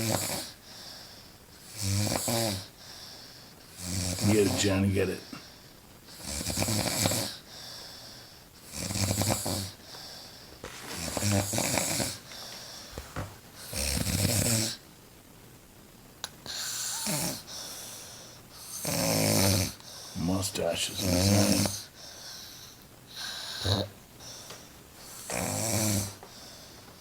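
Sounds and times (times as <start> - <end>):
woman snoring loudly: 0.0 - 0.6, 1.7 - 2.7, 3.8 - 4.8, 6.2 - 7.4, 8.7 - 9.8, 10.8 - 12.2, 16.5 - 17.4, 18.7 - 19.8, 23.5 - 23.9, 25.2 - 26.2.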